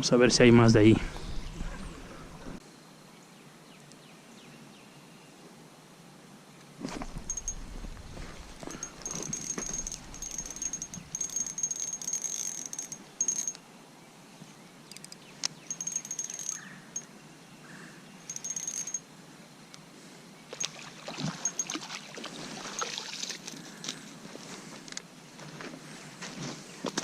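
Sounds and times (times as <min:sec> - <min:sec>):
fishing reel whirring and clicking: 0:07.2 - 0:07.6, 0:08.6 - 0:13.6, 0:15.7 - 0:16.6, 0:18.3 - 0:19.0, 0:21.4 - 0:21.8.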